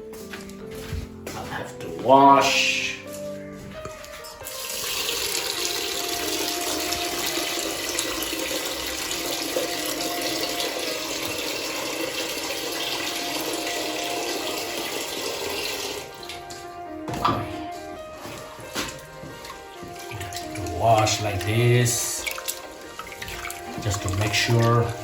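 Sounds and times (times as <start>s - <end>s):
tap water running into a pot: 4.4s - 16.6s, 19.3s - 25.0s.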